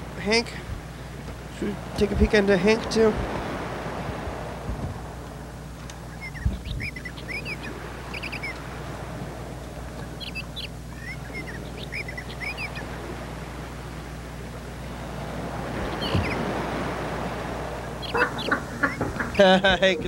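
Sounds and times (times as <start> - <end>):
birds chirping: 0.0 - 20.0
low background rumble: 0.0 - 20.0.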